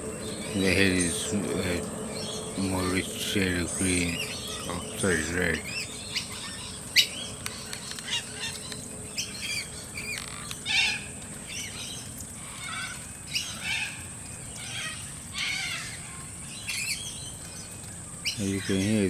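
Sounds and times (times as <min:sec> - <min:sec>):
high-pitched whine: 0:00.0 - 0:13.1
birds chattering chirps: 0:00.0 - 0:19.0.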